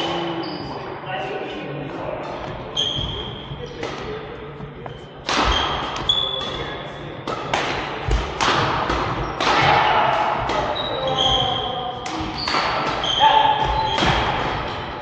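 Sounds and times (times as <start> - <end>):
court shoes squeaking: 0.0 - 0.9, 2.3 - 15.0
rackets hitting shuttlecock: 5.2 - 15.0.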